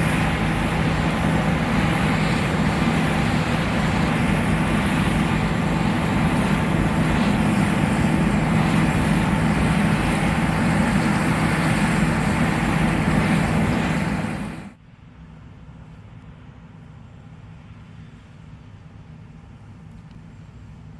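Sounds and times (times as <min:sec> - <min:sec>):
combine harvester running: 0:00.0 - 0:14.8.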